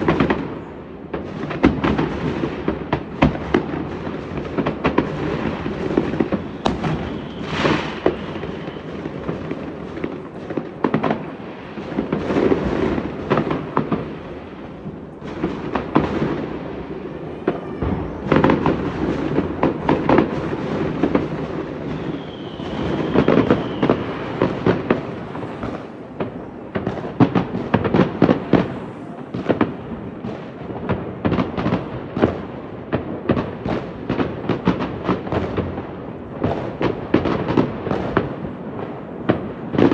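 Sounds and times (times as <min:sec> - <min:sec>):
fireworks bangs and crackles: 0:00.0 - 0:39.9
high rising firework whistle: 0:05.8 - 0:11.7, 0:16.2 - 0:30.6.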